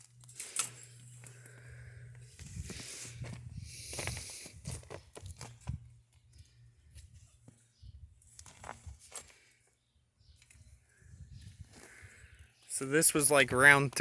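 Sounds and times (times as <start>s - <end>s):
footsteps crunching in snow: 2.3s - 5.6s.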